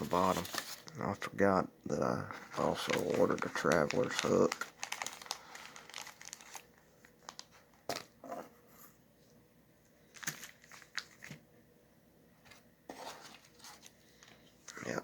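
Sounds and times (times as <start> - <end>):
packaging rustling: 0.0 - 1.0, 2.4 - 8.2, 10.1 - 11.4, 12.9 - 14.9.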